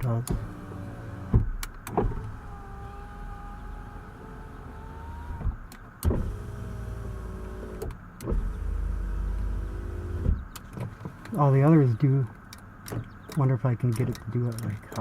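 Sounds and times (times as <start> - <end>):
power window motor whine: 0.3 - 10.5.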